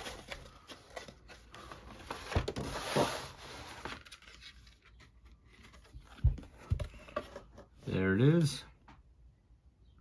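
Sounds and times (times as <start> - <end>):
packaging rustling: 0.0 - 7.0.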